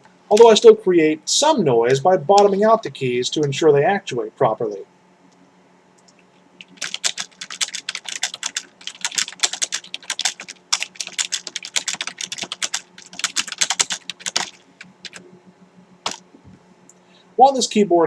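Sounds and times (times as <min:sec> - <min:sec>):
keyboard typing: 0:06.0 - 0:15.3, 0:16.0 - 0:16.2.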